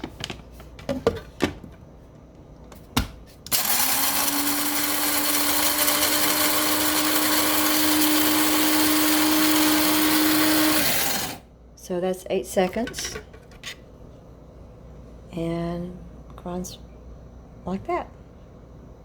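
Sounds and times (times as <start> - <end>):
coffee grinder whirring: 3.5 - 11.5.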